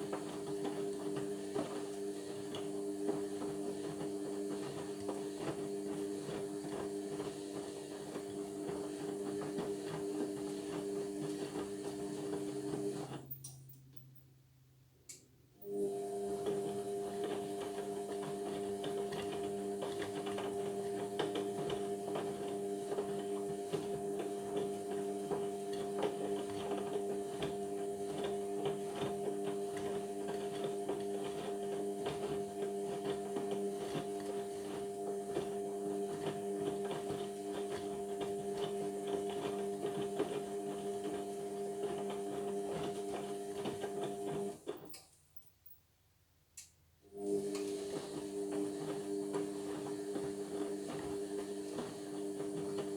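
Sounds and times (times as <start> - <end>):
washing machine motor humming: 0.0 - 13.1, 15.6 - 44.6, 47.2 - 52.9.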